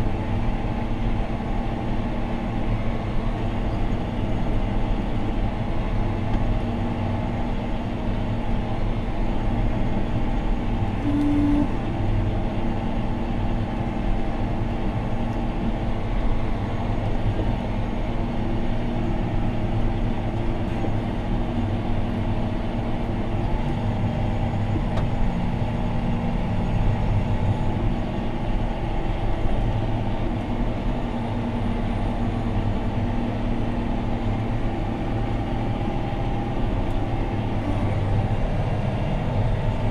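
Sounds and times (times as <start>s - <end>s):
tractor diesel engine running: 0.0s - 39.9s
short beep: 11.0s - 11.8s.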